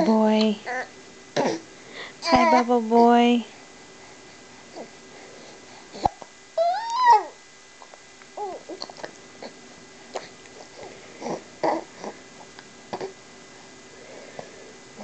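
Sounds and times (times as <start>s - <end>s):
baby cooing: 0.0s - 1.6s, 2.2s - 2.7s, 6.0s - 7.4s, 8.4s - 9.6s, 10.2s - 12.2s.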